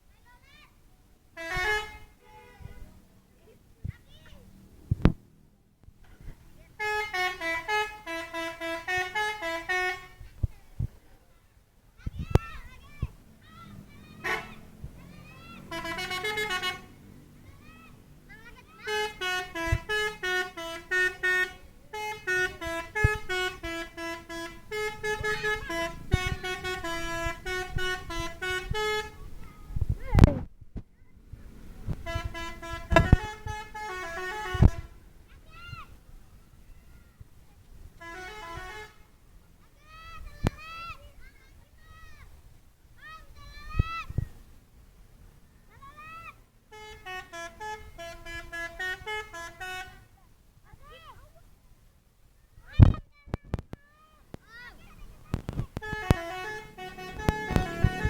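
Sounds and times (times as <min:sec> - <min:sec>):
multi-tone musical truck horn: 0:01.4 - 0:02.9, 0:06.8 - 0:10.2, 0:14.0 - 0:17.3, 0:18.8 - 0:29.4, 0:31.9 - 0:35.1, 0:38.0 - 0:39.2, 0:46.7 - 0:50.2, 0:55.8 - 0:58.0.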